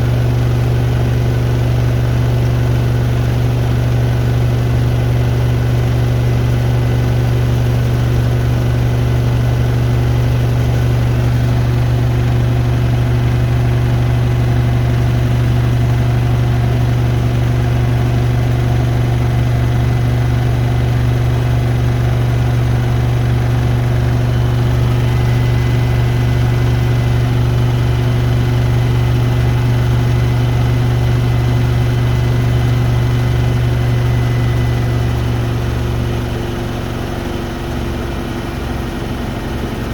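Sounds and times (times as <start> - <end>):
washing machines spinning: 9.0 - 38.6.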